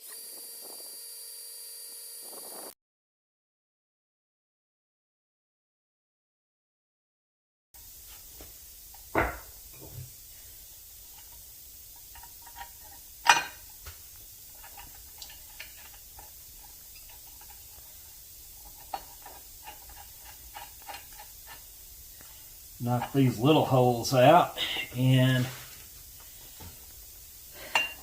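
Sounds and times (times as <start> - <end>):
sharp knocks: 9.1 - 10.0
metal tools clicking and tapping: 12.0 - 13.7, 14.5 - 17.9, 18.6 - 23.3, 27.6 - 28.0.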